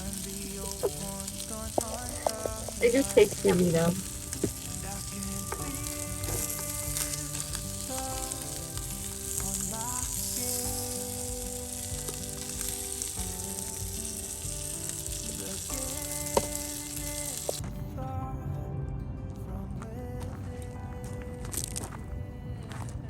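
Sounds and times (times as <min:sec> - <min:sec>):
food sizzling in frying pan: 0:00.0 - 0:17.6.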